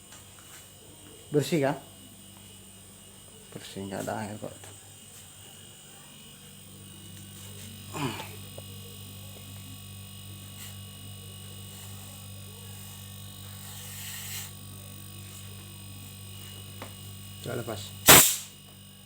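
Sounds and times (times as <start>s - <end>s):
refrigerator compressor humming: 0.0s - 19.0s
short hiss: 18.1s - 18.6s.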